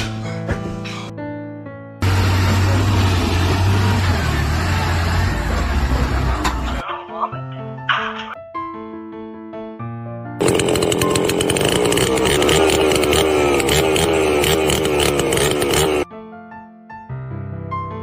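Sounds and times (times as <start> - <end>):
background music: 0.0 - 2.0, 4.9 - 14.4
power tool motor running: 2.0 - 5.3, 10.4 - 16.1.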